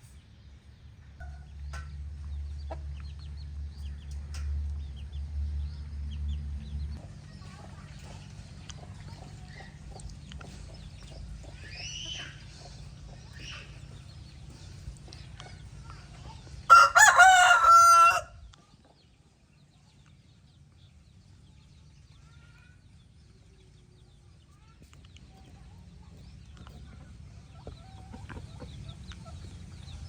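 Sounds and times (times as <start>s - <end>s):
faint high bird calls: 11.5s - 14.0s
rooster crowing: 16.7s - 18.4s.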